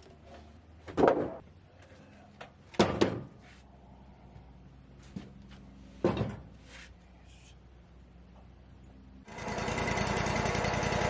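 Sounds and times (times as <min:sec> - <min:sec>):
firewood dropping thunks: 0:00.9 - 0:01.4.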